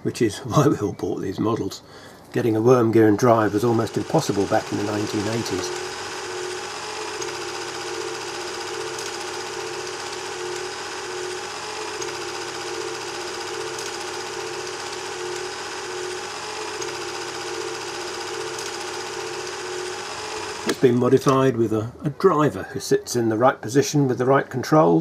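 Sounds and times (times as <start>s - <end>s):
model locomotive motor whirring: 2.7s - 21.5s.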